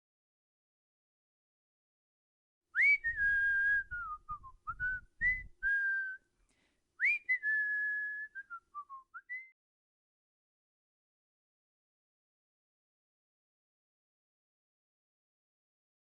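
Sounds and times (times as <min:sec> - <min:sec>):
person whistling: 0:02.8 - 0:06.3, 0:07.0 - 0:09.6.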